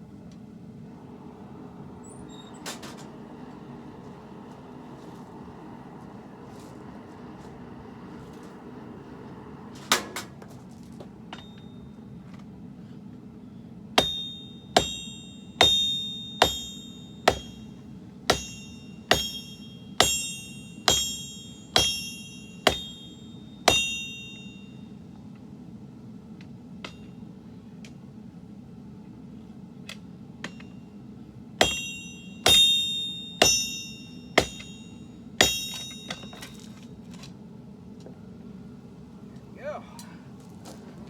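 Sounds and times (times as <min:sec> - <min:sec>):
low hum: 0:00.0 - 0:41.0
hammer ringing on anvil: 0:11.3 - 0:12.0, 0:14.0 - 0:24.9, 0:31.6 - 0:36.7.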